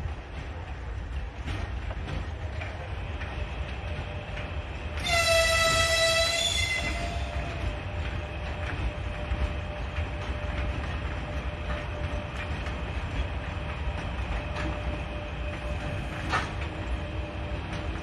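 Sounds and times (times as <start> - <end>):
train rumbling on rails: 0.0 - 18.0.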